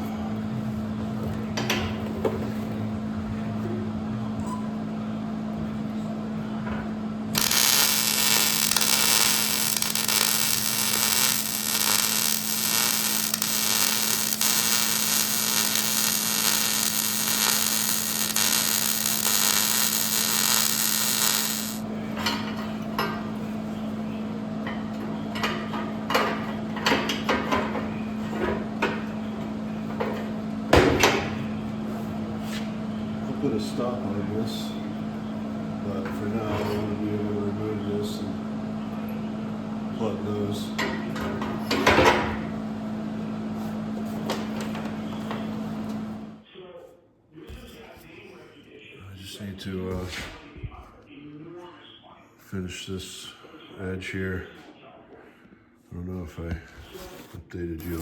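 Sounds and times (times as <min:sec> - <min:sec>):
electrical hum: 0:02.8 - 0:25.4
welding arc crackling and hissing: 0:07.4 - 0:21.8.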